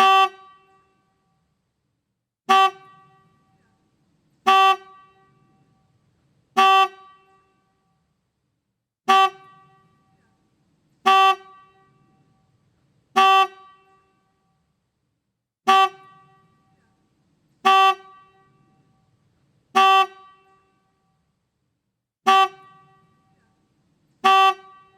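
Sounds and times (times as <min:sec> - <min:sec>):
motorcycle horn honks: 0:00.0 - 0:01.4, 0:02.5 - 0:03.7, 0:04.4 - 0:05.9, 0:06.6 - 0:08.0, 0:09.1 - 0:10.3, 0:11.0 - 0:14.6, 0:15.7 - 0:16.9, 0:17.6 - 0:21.2, 0:22.3 - 0:23.4, 0:24.2 - 0:24.9.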